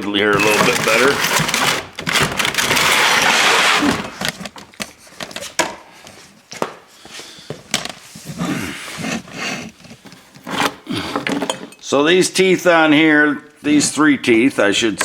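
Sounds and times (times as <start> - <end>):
metal parts scraping: 0.3 - 3.8.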